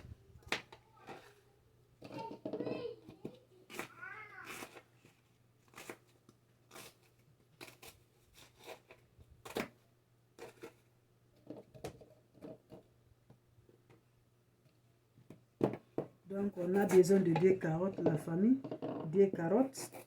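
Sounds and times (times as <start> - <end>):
kitchen items clicking and tapping: 15.3 - 20.0.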